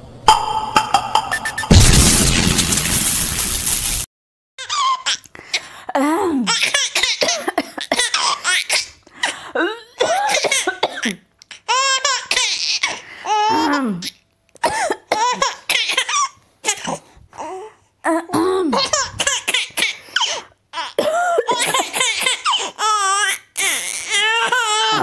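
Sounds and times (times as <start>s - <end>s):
adult coughing: 7.0s - 8.2s, 10.0s - 11.2s, 14.6s - 15.1s, 20.2s - 22.1s.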